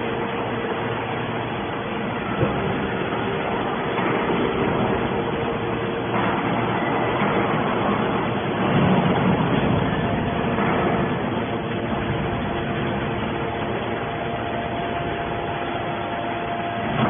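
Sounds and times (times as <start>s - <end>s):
scrap baler mechanical drone: 0.0s - 17.0s.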